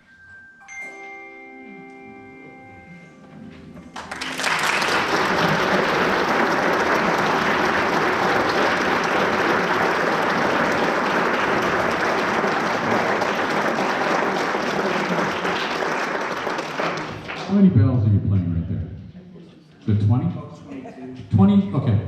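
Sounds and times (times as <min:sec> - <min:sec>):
handbell tones: 0:00.0 - 0:03.2
audience applause: 0:03.9 - 0:17.6.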